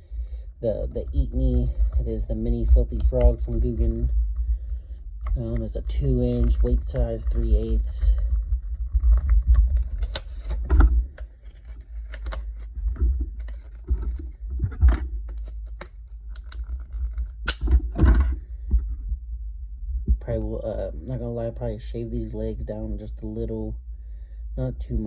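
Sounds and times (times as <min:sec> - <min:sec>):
handling plastic packaging: 0:05.1 - 0:18.4.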